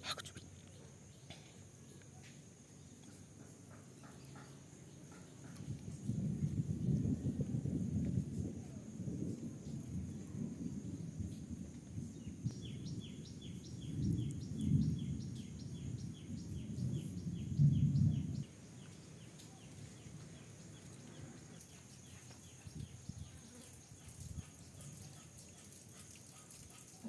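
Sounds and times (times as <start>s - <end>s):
small bird chirping: 12.2s - 25.7s.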